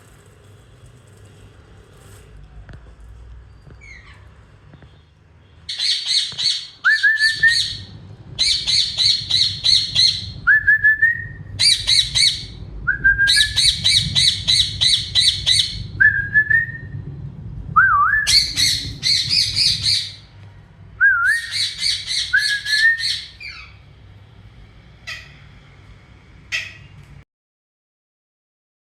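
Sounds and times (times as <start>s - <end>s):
parrots squawking: 3.8s - 4.4s, 5.7s - 10.6s, 11.6s - 12.6s, 13.3s - 16.0s, 18.3s - 20.3s, 21.3s - 23.9s, 25.0s - 25.6s, 26.5s - 27.0s.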